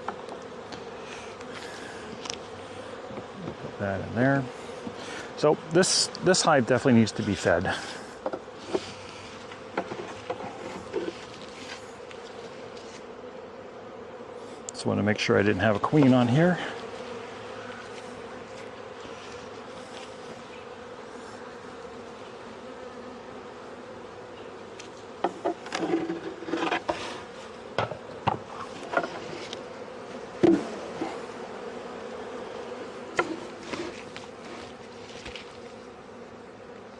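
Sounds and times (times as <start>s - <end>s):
wooden hive frames knocking: 0.0s - 0.5s, 3.0s - 3.8s, 8.2s - 11.4s, 25.2s - 27.1s, 27.7s - 35.6s
bees buzzing: 0.0s - 36.9s.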